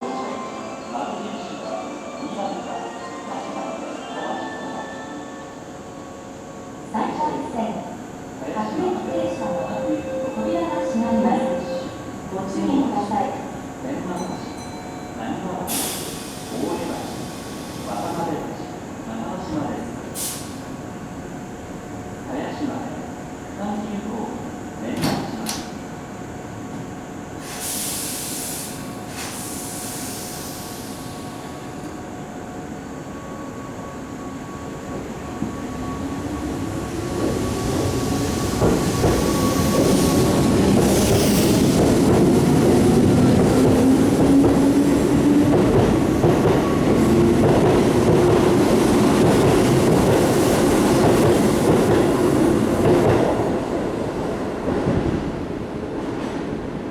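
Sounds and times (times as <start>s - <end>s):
air hiss: 15.7s - 18.3s, 20.2s - 20.8s, 27.4s - 31.8s.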